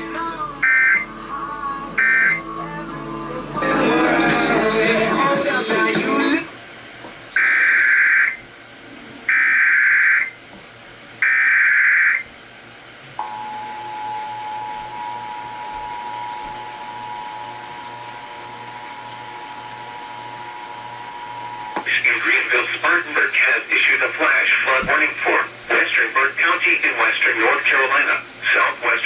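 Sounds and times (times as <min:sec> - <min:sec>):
two-tone attention signal: 0:00.6 - 0:01.1, 0:02.0 - 0:02.4, 0:13.2 - 0:21.8.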